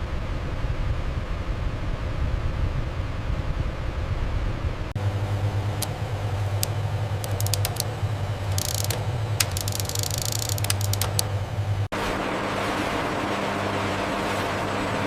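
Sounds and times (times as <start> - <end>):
machinery humming: 5.0 - 11.9
sharp irregular clicks: 5.7 - 11.3.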